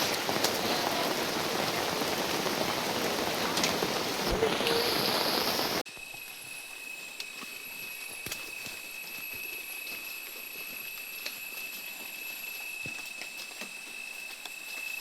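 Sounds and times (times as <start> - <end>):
rushing water hiss: 0.0 - 5.9
insect chorus drones: 0.1 - 15.0.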